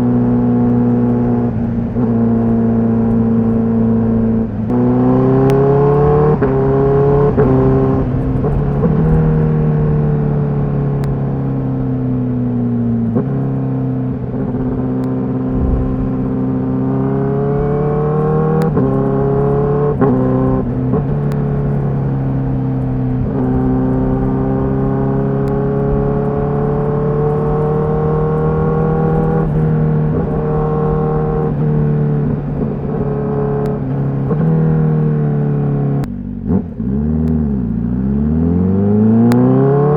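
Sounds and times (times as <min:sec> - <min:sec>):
motorcycle engine revving: 0:11.5 - 0:39.9.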